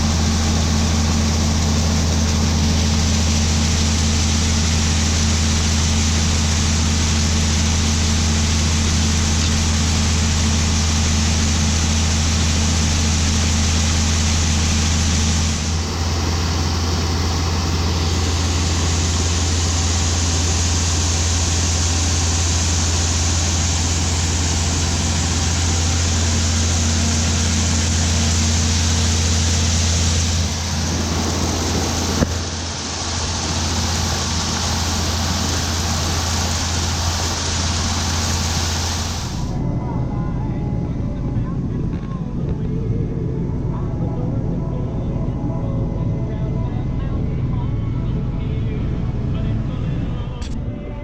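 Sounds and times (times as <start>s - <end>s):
farm machinery engine under load: 0.0s - 39.7s.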